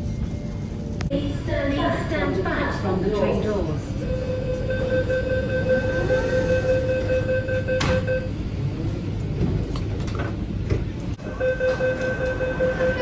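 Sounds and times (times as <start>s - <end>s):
rumbling station noise: 0.0s - 13.0s
train door-closing warning tone: 4.0s - 8.4s, 11.2s - 13.0s
train doors shutting with a knock: 7.8s - 8.1s.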